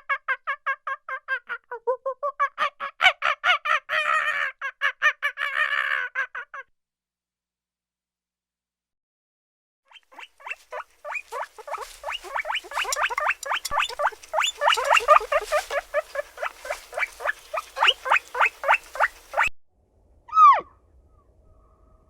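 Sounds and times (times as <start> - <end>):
high falling animal calls: 10.2 - 19.5.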